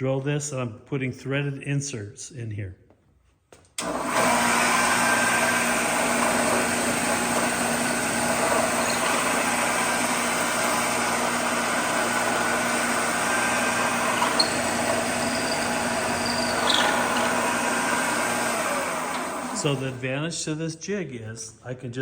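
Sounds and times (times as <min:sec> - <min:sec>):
machine motor boring wood: 0:03.8 - 0:20.0.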